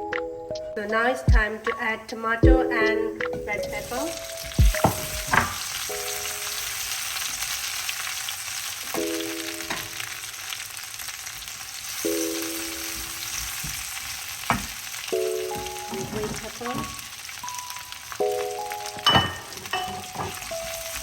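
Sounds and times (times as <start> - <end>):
vegetables sizzling in oil: 3.7 - 21.0
utensil knocking on pan: 4.5 - 5.7, 14.5 - 14.8.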